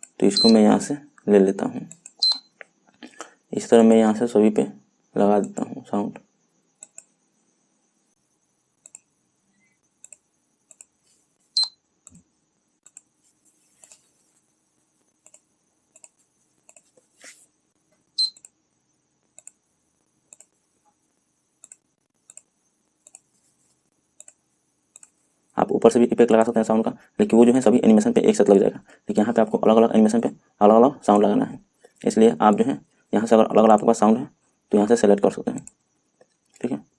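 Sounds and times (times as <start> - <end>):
computer mouse clicking: 1.9 - 2.7, 5.4 - 5.7, 6.8 - 7.1, 8.8 - 9.1, 10.0 - 11.0, 12.8 - 13.1, 13.8 - 14.1, 15.0 - 17.1, 18.2 - 18.6, 19.2 - 19.6, 20.3 - 20.6, 21.6 - 23.3, 24.2 - 25.2.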